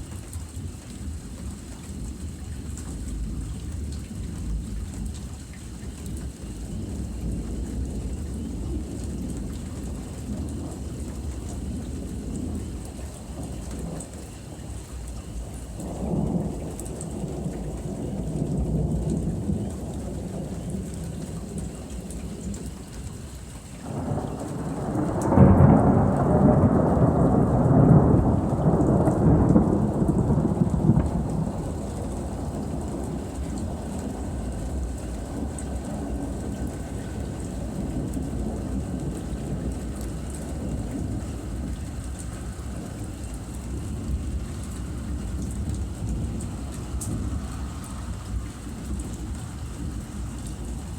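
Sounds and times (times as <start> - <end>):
steady rain: 0.0 - 50.9
thunder rolling: 23.8 - 50.9.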